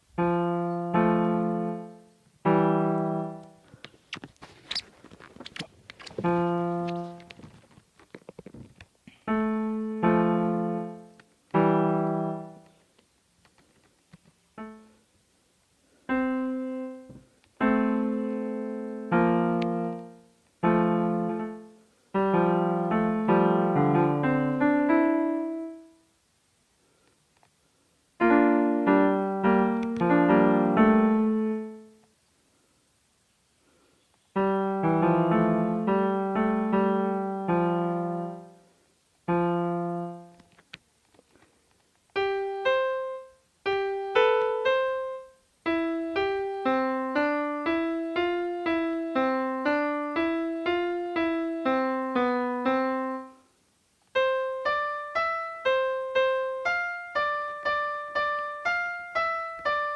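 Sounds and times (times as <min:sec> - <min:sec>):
piano music: 0:00.2 - 0:03.6, 0:06.2 - 0:07.3, 0:09.3 - 0:12.7, 0:14.6 - 0:14.9, 0:16.1 - 0:26.0, 0:28.2 - 0:32.0, 0:34.4 - 0:38.6, 0:39.3 - 0:40.4, 0:42.2 - 0:53.4, 0:54.2 - 0:59.9.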